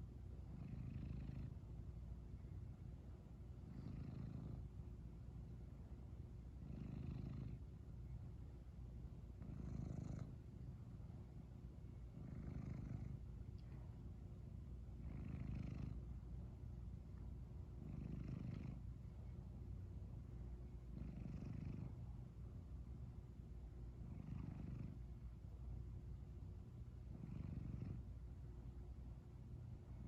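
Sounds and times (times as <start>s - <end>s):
cat purring: 0.1s - 1.7s, 3.3s - 4.9s, 6.5s - 7.8s, 9.2s - 10.6s, 12.0s - 14.0s, 14.9s - 16.2s, 17.6s - 19.4s, 20.7s - 22.2s, 23.9s - 25.3s, 26.9s - 28.3s.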